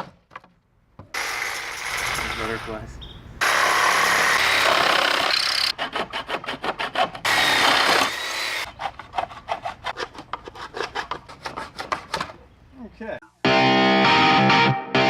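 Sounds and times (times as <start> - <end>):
scraping on wooden board: 8.7 - 12.4.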